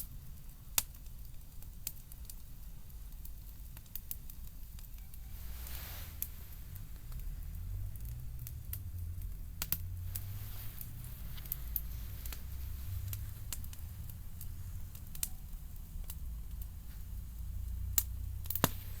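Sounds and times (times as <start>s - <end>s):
wood fire crackling and popping: 0.0s - 19.0s
steady low rumble: 5.2s - 19.0s.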